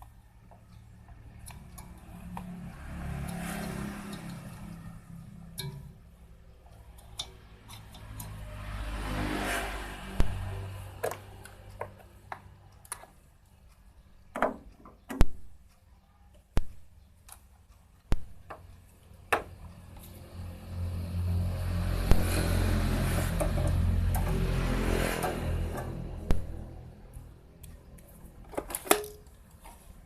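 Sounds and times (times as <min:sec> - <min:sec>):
handling clicks and knocks: 0:27.6 - 0:30.0.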